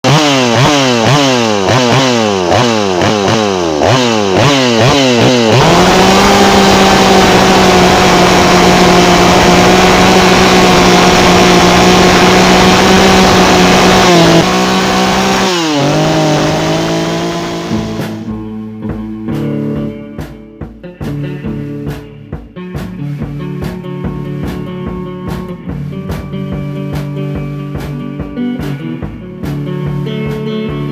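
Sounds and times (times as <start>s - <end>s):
chainsaw revving and carving wood: 0.0s - 18.4s
guitar-led rock music: 0.0s - 30.9s.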